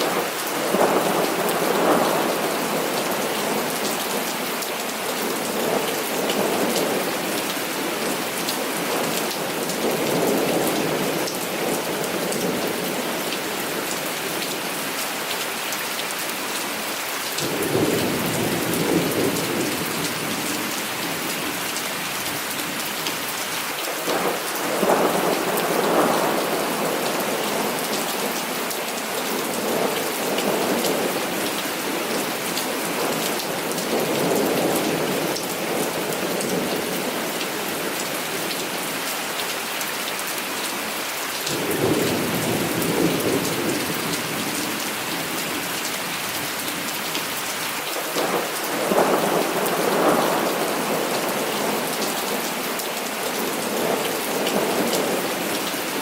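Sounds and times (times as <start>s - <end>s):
heavy rain falling: 0.0s - 56.0s.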